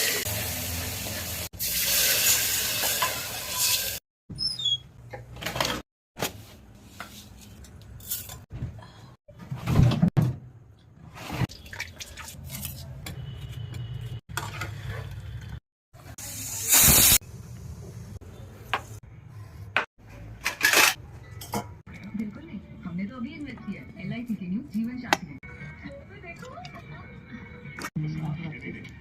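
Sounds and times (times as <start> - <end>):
pots and utensils clattering: 20.4 - 21.9.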